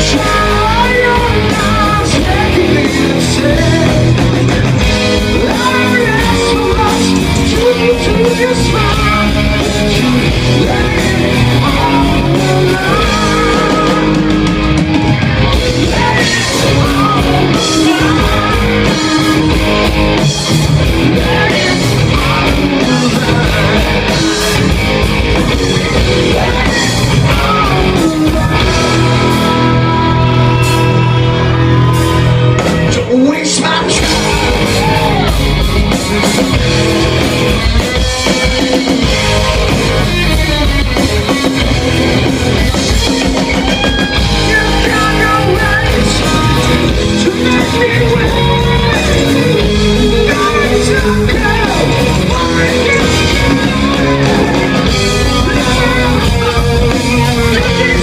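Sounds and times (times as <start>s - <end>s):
person singing: 0.0s - 36.5s, 37.8s - 58.0s
drum kit: 0.0s - 58.0s
electric guitar: 0.0s - 58.0s.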